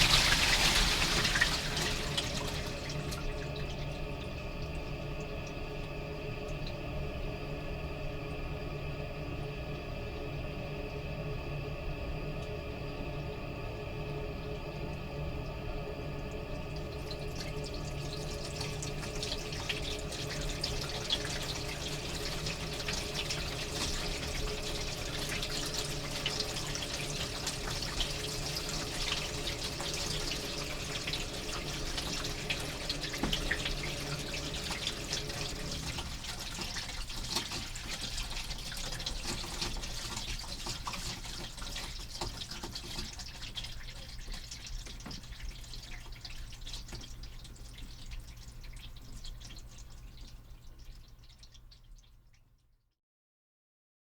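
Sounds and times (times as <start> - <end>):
toilet tank refilling: 0.0 - 52.4
steady hum: 0.8 - 41.0.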